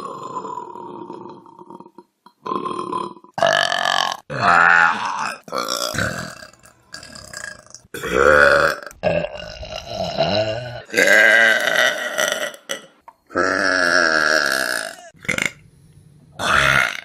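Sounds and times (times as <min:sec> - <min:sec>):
person burping: 0:00.0 - 0:15.6, 0:16.4 - 0:17.0.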